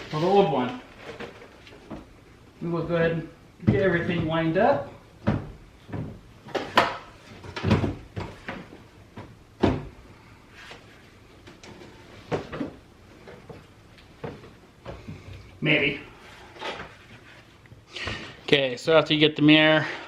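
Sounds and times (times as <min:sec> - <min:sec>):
mirror hardware knocking and clunking: 0:05.2 - 0:10.0.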